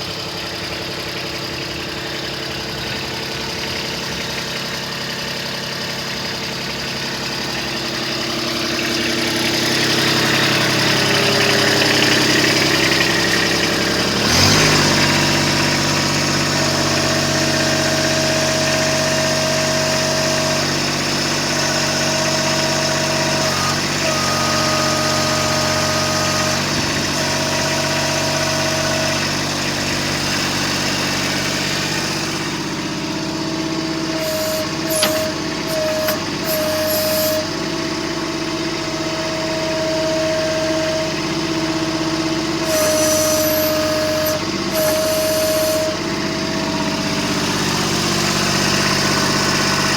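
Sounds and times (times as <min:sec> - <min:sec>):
diesel engine running: 0:00.0 - 0:49.9
steady whine: 0:34.1 - 0:37.6, 0:42.6 - 0:46.3.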